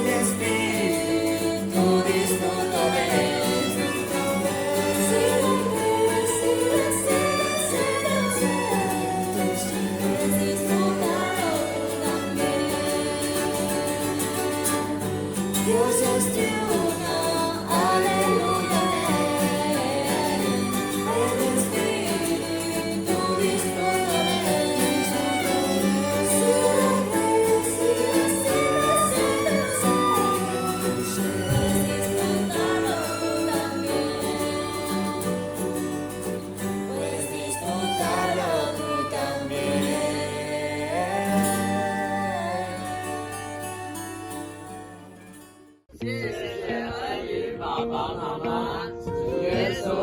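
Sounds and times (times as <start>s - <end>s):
group singing a hymn with strings: 0.0s - 45.0s, 45.9s - 50.0s.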